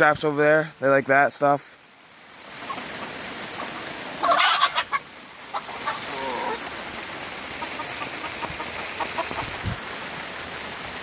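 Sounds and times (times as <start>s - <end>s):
rain hissing: 0.0s - 11.0s
chickens clucking: 2.5s - 9.8s
chicken squawk: 2.6s - 6.7s.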